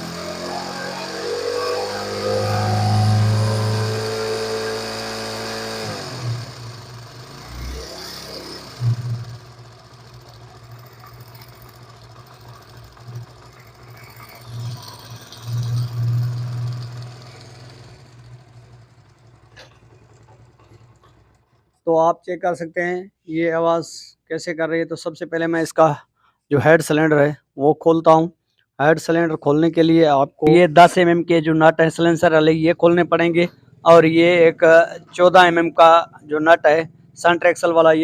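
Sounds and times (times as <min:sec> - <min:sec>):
motorcycle engine revving and idling: 0:00.0 - 0:21.8, 0:32.1 - 0:38.0.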